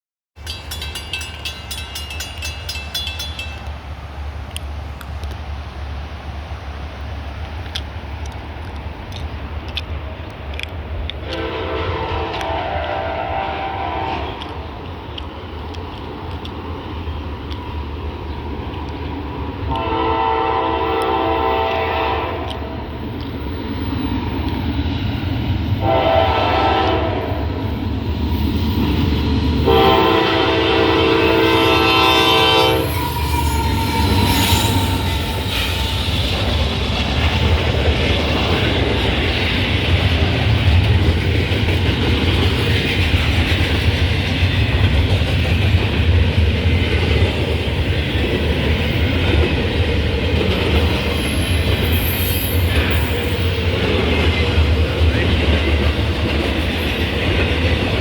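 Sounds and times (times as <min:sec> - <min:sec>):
train passing with clickety-clack: 0:00.4 - 0:58.0
train horn: 0:11.2 - 0:14.6, 0:19.7 - 0:22.9, 0:25.8 - 0:27.5, 0:29.6 - 0:36.2.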